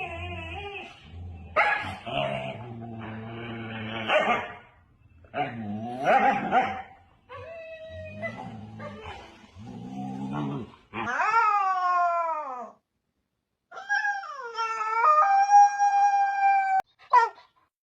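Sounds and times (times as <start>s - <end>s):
puppy howling: 7.3s - 9.5s.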